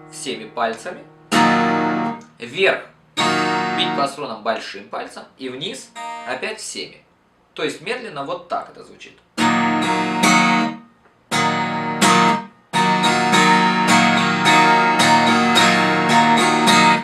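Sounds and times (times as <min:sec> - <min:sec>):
acoustic guitar strummed slowly: 0:00.0 - 0:02.2, 0:03.2 - 0:04.0, 0:06.0 - 0:06.3, 0:09.4 - 0:17.0.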